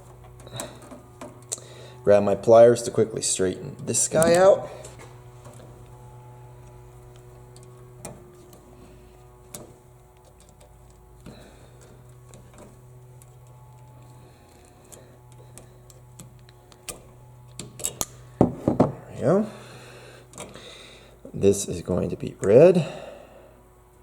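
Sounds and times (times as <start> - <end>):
pliers clicking on wire: 4.1 - 4.5, 9.5 - 18.2.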